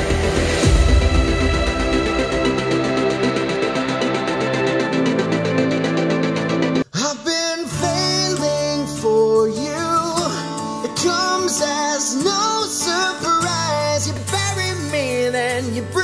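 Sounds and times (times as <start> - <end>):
electronic music: 0.0 - 6.9
person singing over guitar: 6.9 - 16.0.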